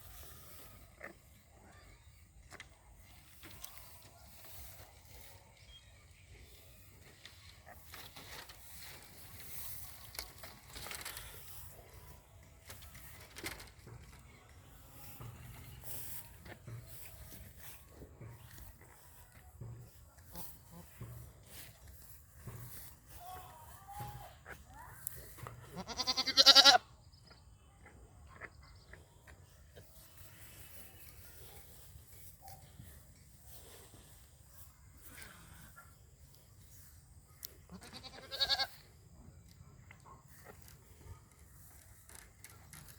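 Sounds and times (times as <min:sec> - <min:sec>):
rustling: 0:06.8 - 0:16.3
goat bleating: 0:25.8 - 0:26.8, 0:37.7 - 0:38.8.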